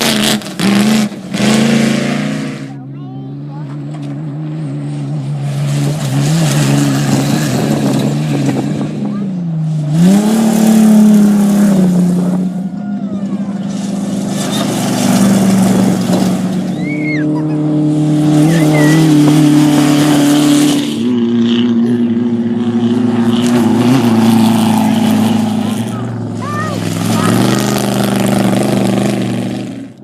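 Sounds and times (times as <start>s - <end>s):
race engines at high revs: 0.0s - 30.0s.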